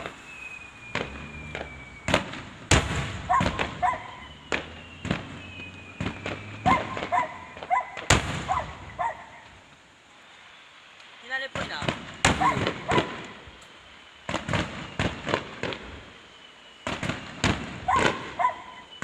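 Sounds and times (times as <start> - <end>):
faint descending whistle: 0.0 - 9.5, 13.6 - 19.0
fireworks bangs: 0.0 - 19.0.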